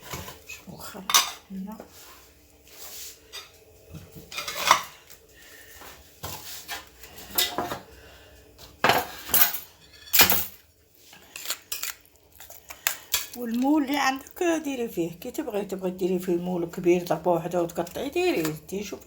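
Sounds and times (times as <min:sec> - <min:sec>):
utensils clinking against dishes: 0:01.0 - 0:01.5, 0:04.2 - 0:05.2, 0:06.3 - 0:07.8, 0:08.8 - 0:10.6.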